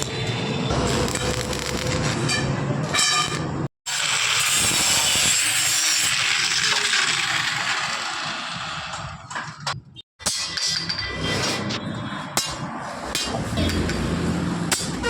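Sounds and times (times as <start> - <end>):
angle grinder grinding steel: 3.2 - 9.2.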